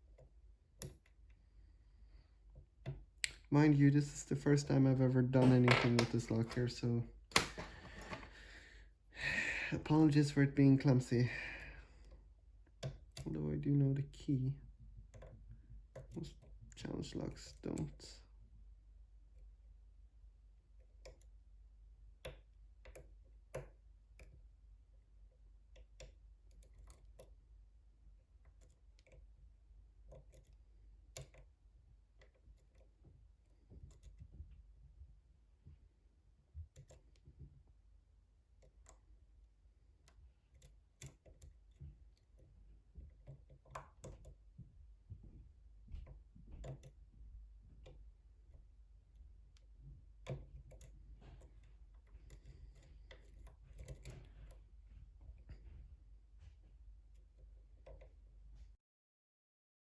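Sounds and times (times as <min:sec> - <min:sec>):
lock pick clicking in lock: 0:07.3 - 0:08.2.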